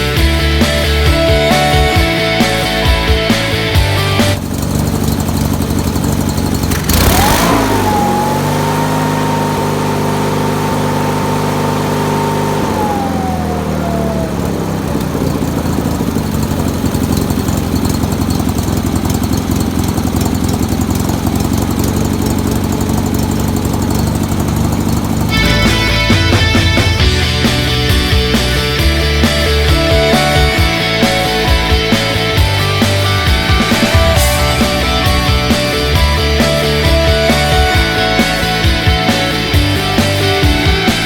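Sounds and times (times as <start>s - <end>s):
garden tractor engine running: 0.0s - 41.0s.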